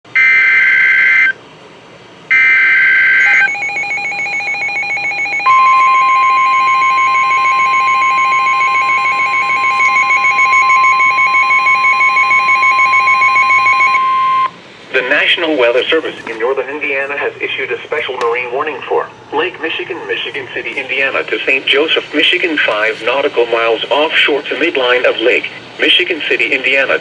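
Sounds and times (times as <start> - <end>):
steady warning alarm tone: 0.1 - 1.4, 2.3 - 16.0
rapid pulsing beep: 2.4 - 15.3.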